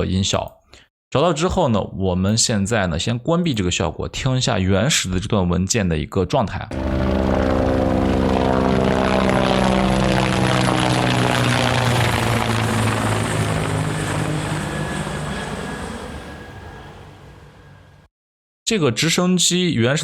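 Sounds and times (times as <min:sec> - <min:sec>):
helicopter flying overhead: 0:06.7 - 0:18.1.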